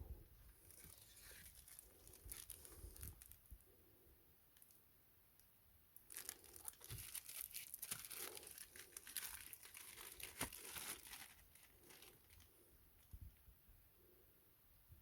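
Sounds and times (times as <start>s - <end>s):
packaging crinkling and tearing: 0.6s - 3.4s, 6.1s - 13.2s.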